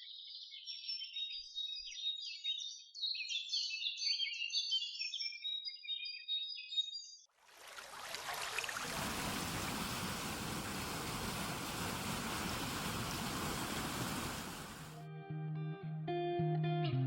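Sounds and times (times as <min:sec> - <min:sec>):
rushing water: 0:07.3 - 0:15.0
guitar music: 0:15.0 - 0:17.0.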